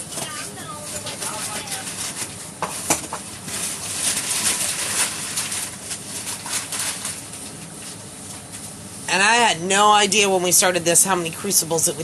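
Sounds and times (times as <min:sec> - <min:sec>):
packaging rustling and crinkling: 0:00.9 - 0:08.6.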